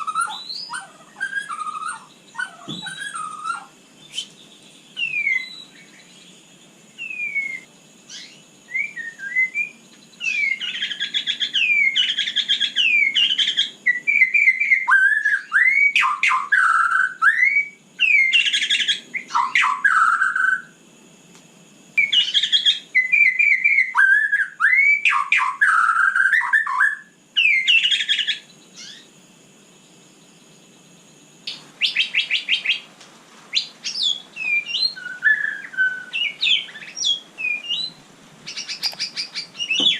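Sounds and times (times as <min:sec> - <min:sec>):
bird singing whistled phrases: 0:00.0 - 0:06.2, 0:07.0 - 0:20.8, 0:22.0 - 0:29.1, 0:33.5 - 0:39.9.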